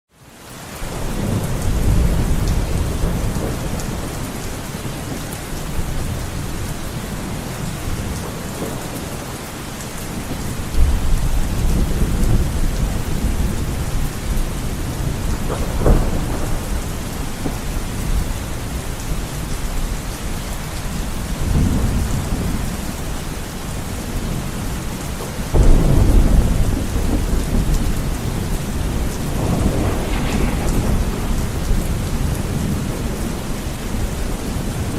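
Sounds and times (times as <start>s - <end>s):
heavy rain on a window: 0.1s - 34.9s
wind: 0.1s - 34.9s
thunder rolling: 0.9s - 9.3s, 10.0s - 24.6s, 25.5s - 34.9s
sharp thunder crack: 14.6s - 18.7s, 25.5s - 34.9s.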